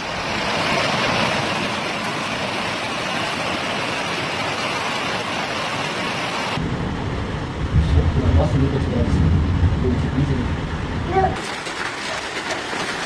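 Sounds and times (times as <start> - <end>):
heavy hail pouring down: 6.6 - 13.0.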